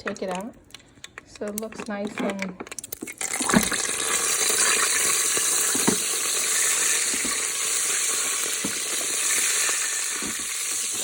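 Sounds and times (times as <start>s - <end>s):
oil sizzling in a pot: 3.0s - 11.0s.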